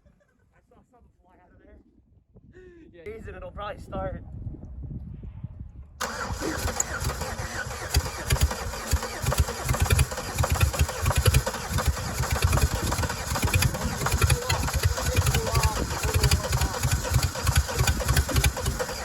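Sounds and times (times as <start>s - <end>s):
car engine running: 6.0s - 19.0s.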